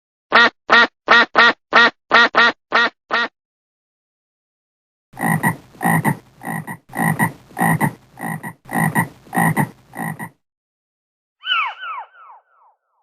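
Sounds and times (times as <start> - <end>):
frog croaking: 5.2 - 10.4.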